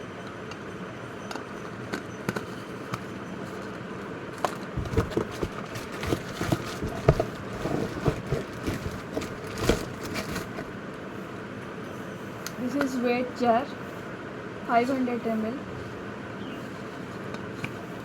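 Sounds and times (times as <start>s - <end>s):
hard plastic parts clicking: 4.4s - 10.8s.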